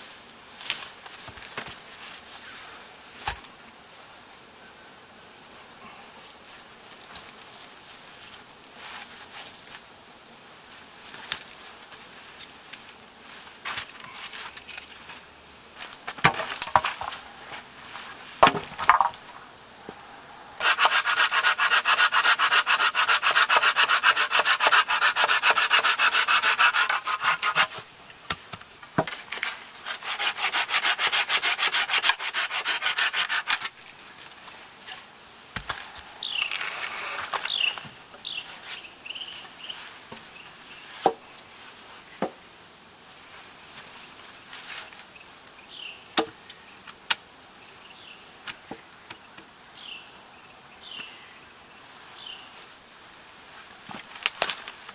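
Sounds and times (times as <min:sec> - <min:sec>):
wood knocking and snapping: 0:16.0 - 0:17.3, 0:18.4 - 0:20.0
hand saw cutting wood: 0:16.3 - 0:17.7, 0:20.6 - 0:27.8, 0:29.3 - 0:33.8, 0:35.9 - 0:37.8.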